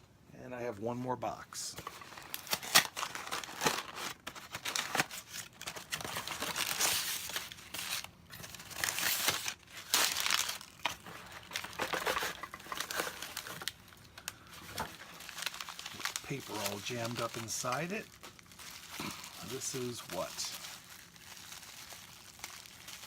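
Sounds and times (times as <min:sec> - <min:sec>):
paper crumpling and tearing: 0:01.8 - 0:23.0.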